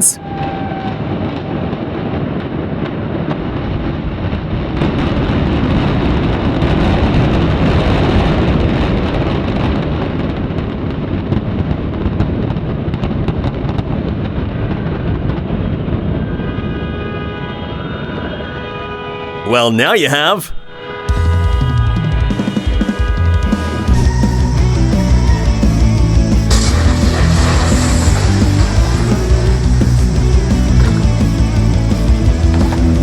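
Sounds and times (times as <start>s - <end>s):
buildings collapsing rumble: 26.6s - 33.0s.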